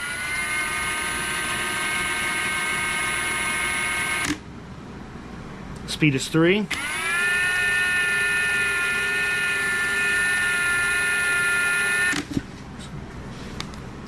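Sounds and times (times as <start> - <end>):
impact wrench motor whine: 0.0 - 4.4, 6.7 - 12.4.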